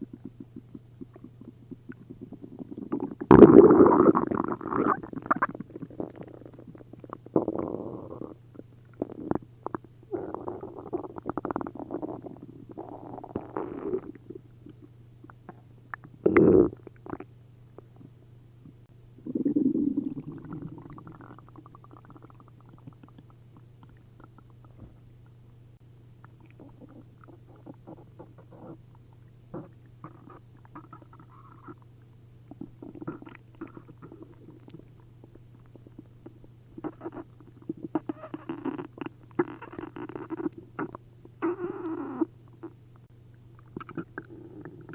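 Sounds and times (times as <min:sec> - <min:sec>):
stomach gurgling: 0:00.0 - 0:24.9, 0:26.2 - 0:42.8, 0:43.5 - 0:44.9.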